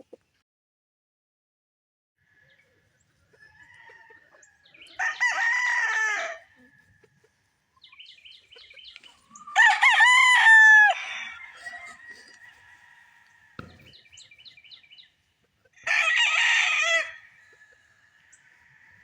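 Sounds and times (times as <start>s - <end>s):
birds clucking and calling: 2.4s - 19.0s
rooster crowing: 3.4s - 7.0s, 9.3s - 13.9s, 15.8s - 19.0s.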